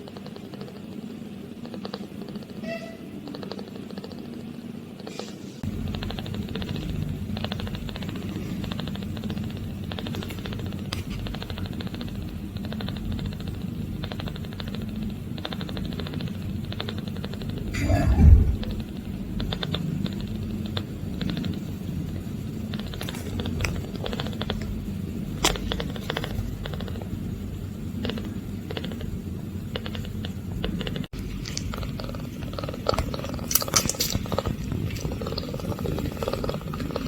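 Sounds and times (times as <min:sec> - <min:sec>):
cat purring: 0:05.6 - 0:37.0.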